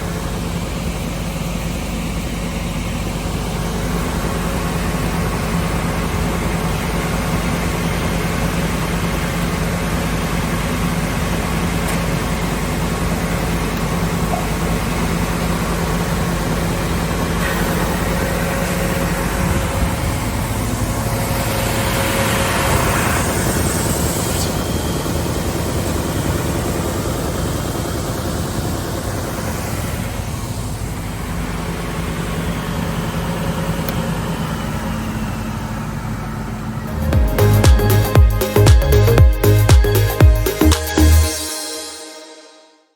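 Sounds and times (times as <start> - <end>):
sander machine hum: 17.6 - 28.4.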